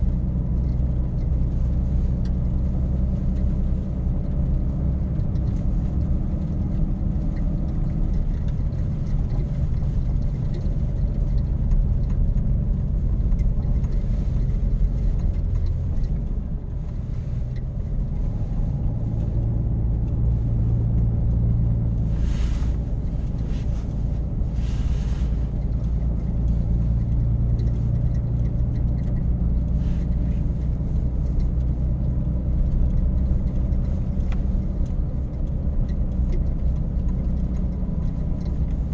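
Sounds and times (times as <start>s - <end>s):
truck engine rumbling: 0.0s - 38.9s
short hissing swishes: 22.1s - 25.6s.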